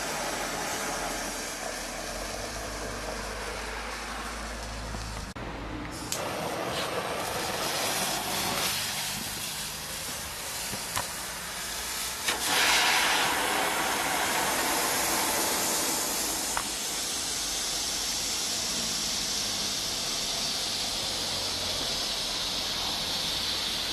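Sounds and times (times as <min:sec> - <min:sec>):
flare burning with hiss: 0:00.0 - 0:23.9
sharp pops: 0:12.2 - 0:18.9.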